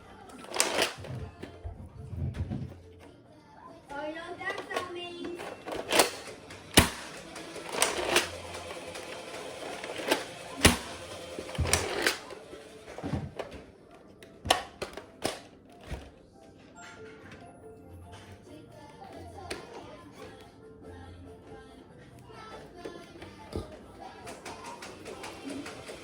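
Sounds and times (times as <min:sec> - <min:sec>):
toy blaster plastic clacks: 0:00.3 - 0:01.5, 0:04.5 - 0:13.6, 0:14.5 - 0:15.5, 0:22.8 - 0:26.0.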